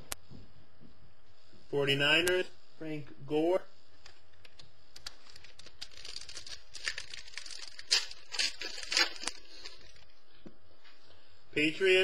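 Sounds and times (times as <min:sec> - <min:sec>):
trading cards rustling: 0:04.4 - 0:10.1.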